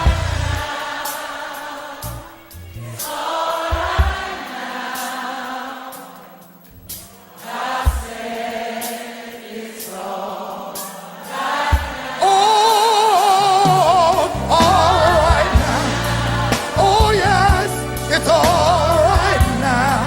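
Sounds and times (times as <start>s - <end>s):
band with heavy bass and drums: 0.0s - 0.7s, 13.4s - 20.0s
choir and congregation singing: 0.0s - 20.0s
lead voice with wide vibrato: 0.0s - 20.0s.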